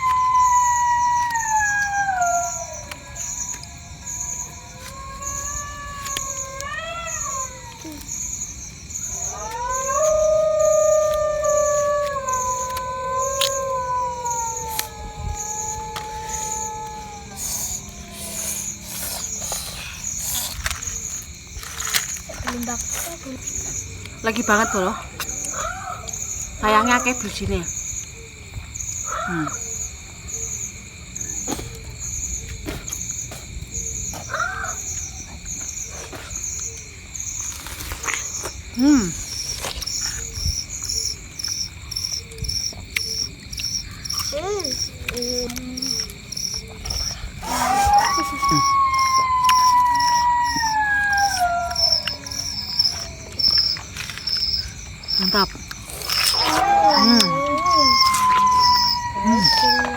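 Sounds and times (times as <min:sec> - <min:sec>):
dog howling: 0:00.0 - 0:08.0, 0:09.1 - 0:20.0, 0:44.2 - 0:54.2, 0:56.2 - 0:59.9
insects chirping: 0:00.0 - 0:59.9
rising and falling animal call: 0:47.4 - 0:53.4, 0:56.3 - 0:59.9.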